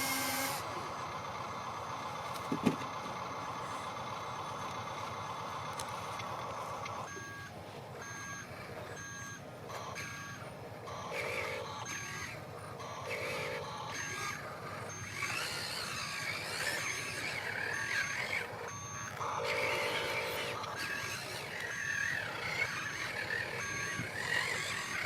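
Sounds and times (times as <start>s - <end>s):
model motor running: 0.0s - 0.8s, 11.0s - 25.0s
reversing alarm beeps: 6.8s - 25.0s.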